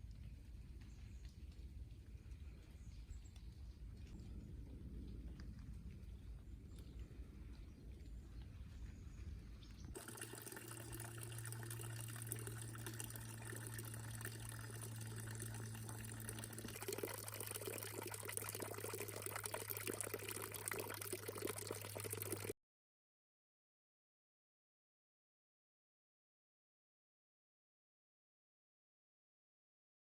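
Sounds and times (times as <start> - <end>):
steady low hum: 8.8 - 20.8
water running: 10.0 - 22.5.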